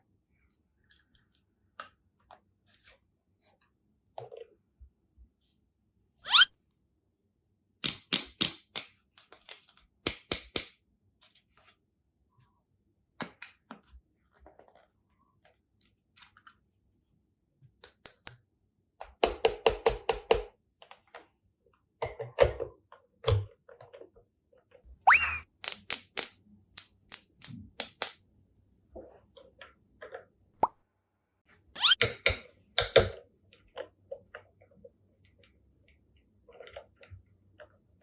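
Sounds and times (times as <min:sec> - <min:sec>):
toy pieces clicking: 0:25.1 - 0:28.2.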